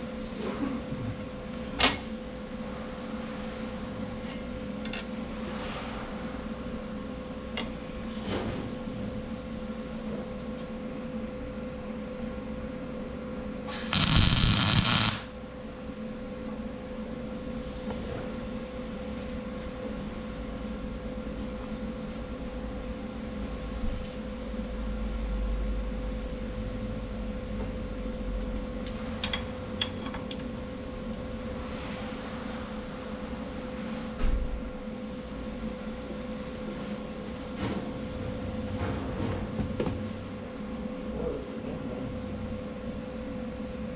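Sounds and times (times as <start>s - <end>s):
loud buzzing burst: 13.7s - 15.4s
workshop tool humming: 13.7s - 16.4s.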